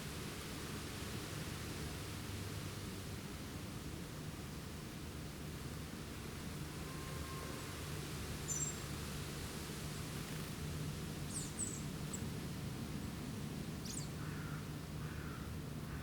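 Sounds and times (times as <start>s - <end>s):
low background hum and hiss: 0.0s - 16.0s
small birds calling: 8.5s - 8.8s, 11.3s - 12.3s, 13.8s - 15.4s.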